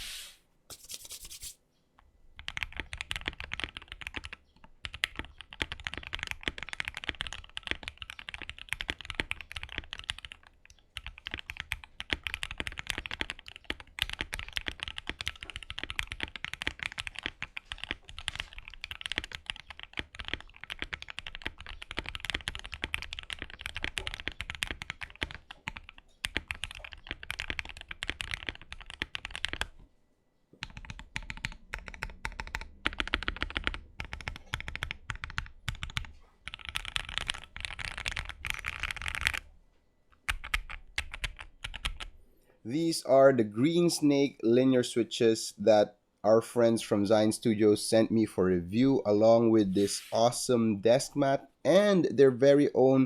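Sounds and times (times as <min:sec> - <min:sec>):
fast typing on mechanical keyboard: 0:02.4 - 0:29.8, 0:30.6 - 0:39.4, 0:40.2 - 0:42.1.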